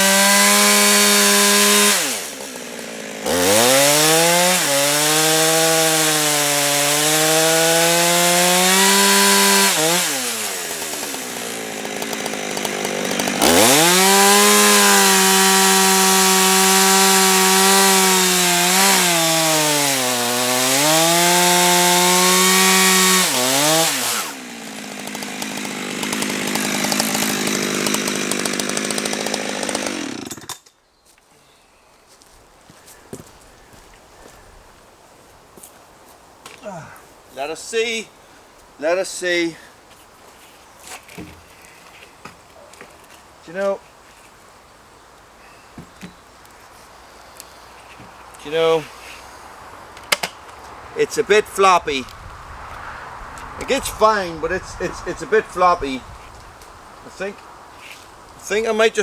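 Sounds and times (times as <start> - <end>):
chainsaw cutting a log: 0.0 - 30.7, 48.4 - 49.3, 53.6 - 56.0.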